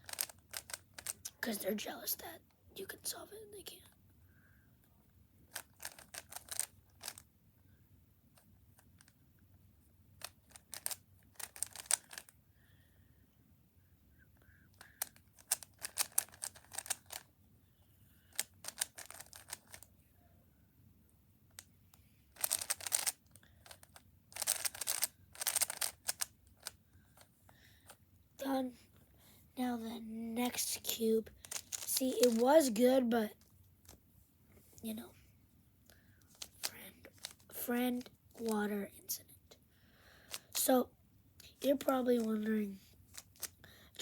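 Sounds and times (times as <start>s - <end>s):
puzzle cube clicking: 0.0s - 1.4s, 5.5s - 7.2s, 10.2s - 12.3s, 14.7s - 17.3s, 18.3s - 19.9s, 22.3s - 28.0s, 30.5s - 32.8s, 35.9s - 38.6s, 43.1s - 43.6s.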